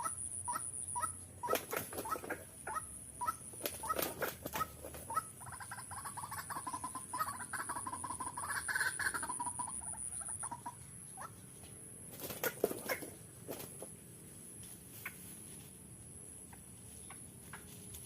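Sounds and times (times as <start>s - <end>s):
waterhen calling: 0.0s - 11.4s.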